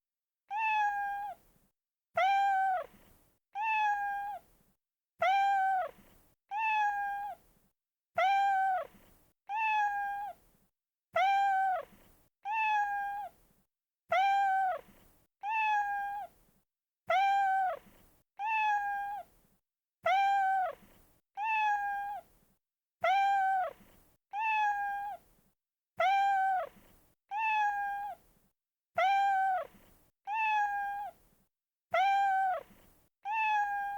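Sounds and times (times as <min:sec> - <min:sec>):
cat meow: 0:00.5 - 0:01.4, 0:02.2 - 0:03.0, 0:03.6 - 0:04.5, 0:05.2 - 0:07.4, 0:08.2 - 0:10.4, 0:11.2 - 0:13.4, 0:14.1 - 0:14.8, 0:15.4 - 0:16.4, 0:17.1 - 0:19.3, 0:20.0 - 0:20.8, 0:21.4 - 0:22.3, 0:23.0 - 0:25.2, 0:26.0 - 0:28.2, 0:29.0 - 0:31.2, 0:31.9 - 0:33.9.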